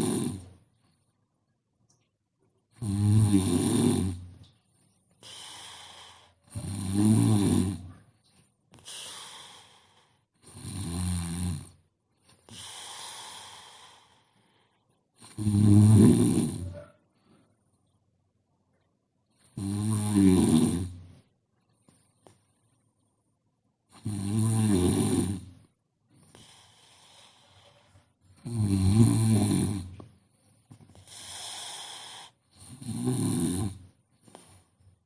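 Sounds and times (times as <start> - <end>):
person snoring: 2.8 - 4.2, 6.5 - 7.8, 15.3 - 16.9, 19.6 - 20.9, 24.0 - 25.4, 28.5 - 29.8, 31.1 - 33.8
breathy breathing: 8.8 - 10.3, 12.4 - 14.9.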